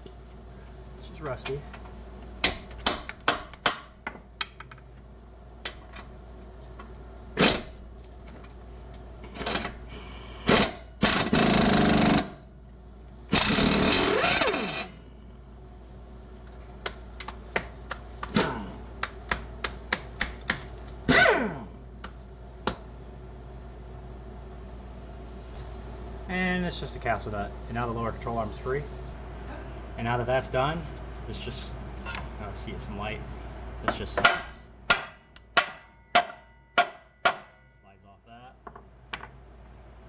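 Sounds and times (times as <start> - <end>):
power tool bursts: 10.0 - 12.4, 13.3 - 15.0.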